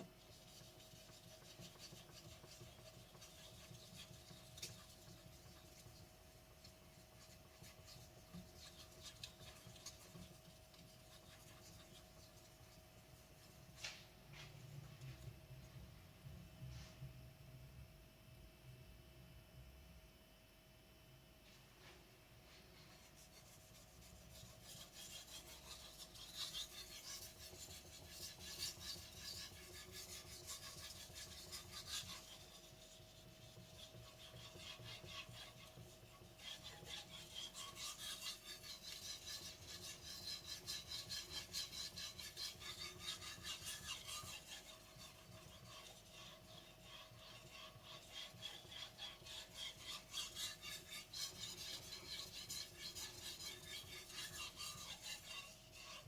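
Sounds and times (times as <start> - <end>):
blade scraping on whetstone: 24.3 - 56.0.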